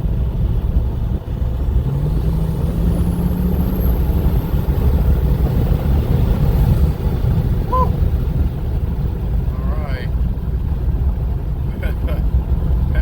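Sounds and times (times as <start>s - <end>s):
diesel engine accelerating: 0.0s - 13.0s
turbo whistle: 7.7s - 8.0s.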